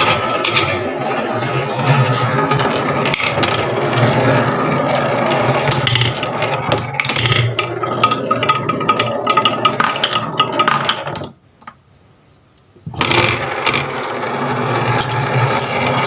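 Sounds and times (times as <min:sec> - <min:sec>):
marbles rolling on wooden run: 0:00.0 - 0:11.4, 0:13.0 - 0:16.0
marbles clacking on track: 0:02.3 - 0:11.4, 0:13.0 - 0:16.0.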